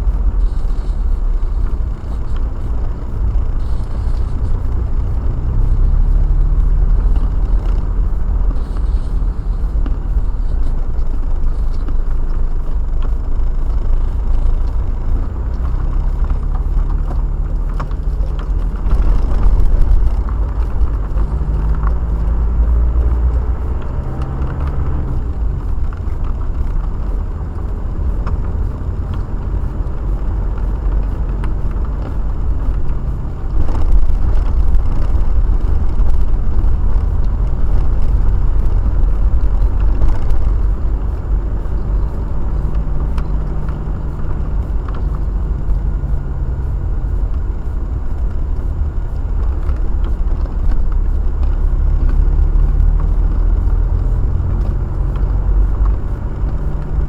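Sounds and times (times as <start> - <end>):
engine hum: 0.0 - 57.0
road and engine rumble inside car: 0.0 - 57.0.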